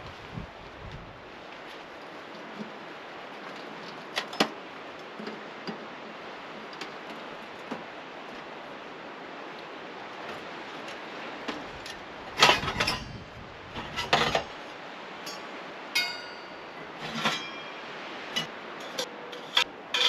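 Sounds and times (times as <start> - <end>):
metal ringing: 15.2 - 20.0.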